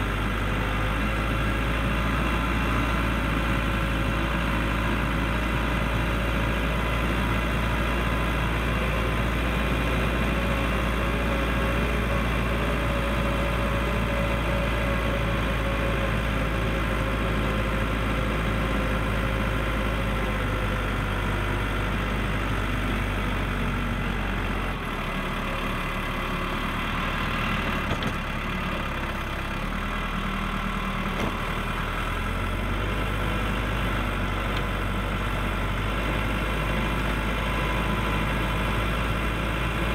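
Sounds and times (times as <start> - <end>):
backhoe diesel engine running: 0.0 - 39.9.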